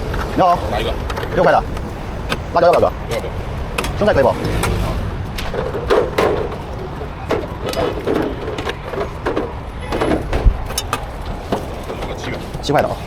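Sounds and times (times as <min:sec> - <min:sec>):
utensils knocking and scraping: 0:01.0 - 0:13.0.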